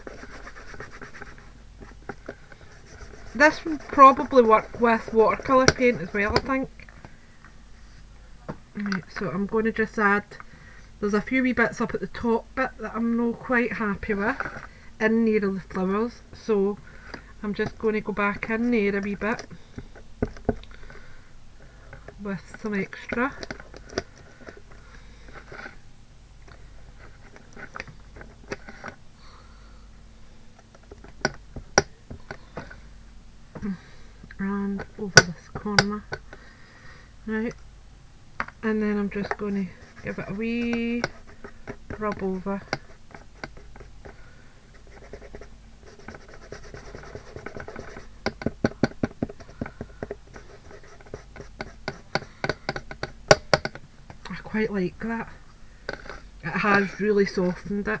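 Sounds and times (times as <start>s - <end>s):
hand rubbing painted box: 0.0s - 6.7s, 26.6s - 29.0s, 38.8s - 53.6s.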